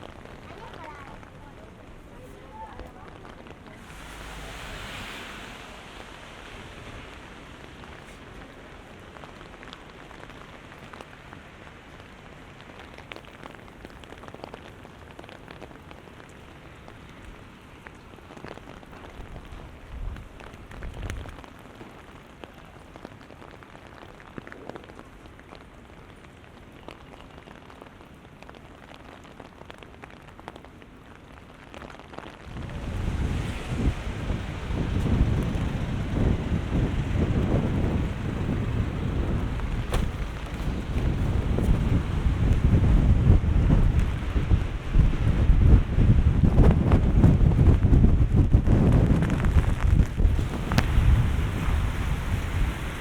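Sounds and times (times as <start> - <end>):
heavy rain on hard surfaces: 0.0 - 53.0
low rumbles: 32.4 - 51.5.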